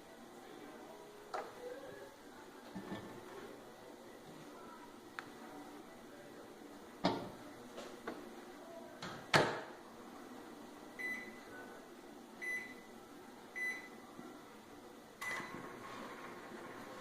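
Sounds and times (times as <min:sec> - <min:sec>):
microwave oven humming: 0:09.5 - 0:17.0
short keypad beeps: 0:15.2 - 0:15.5.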